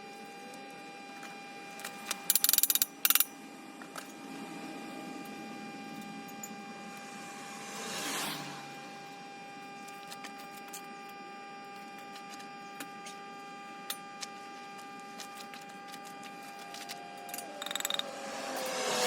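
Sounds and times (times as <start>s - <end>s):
electrical hum: 0.0s - 10.1s.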